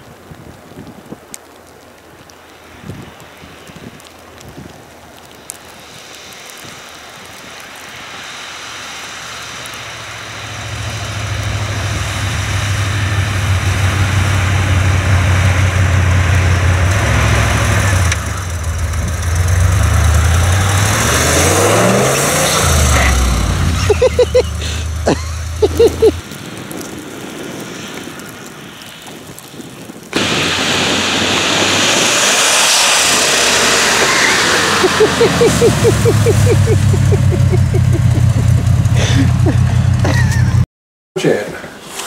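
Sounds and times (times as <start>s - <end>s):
wind noise: 0.0s - 1.4s, 2.7s - 40.6s
vehicle engine running: 10.0s - 26.2s, 31.2s - 40.6s.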